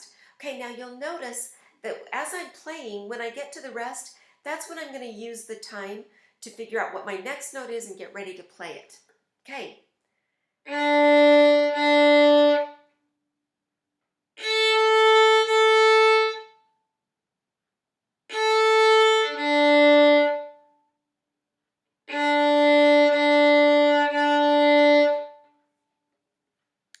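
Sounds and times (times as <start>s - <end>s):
violin slow bowed notes: 10.7s - 12.9s, 14.4s - 16.6s, 18.3s - 20.7s, 22.1s - 25.6s.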